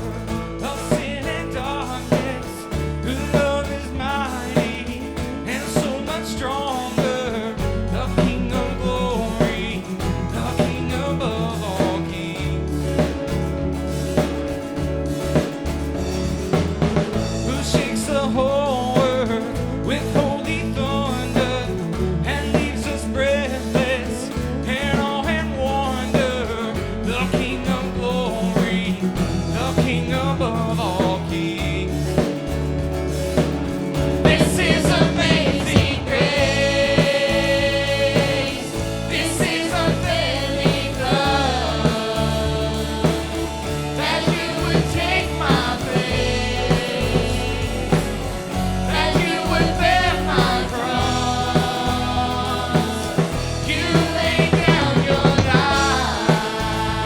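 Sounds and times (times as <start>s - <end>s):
worship band playing: 0.0s - 57.0s
person singing: 34.2s - 57.0s.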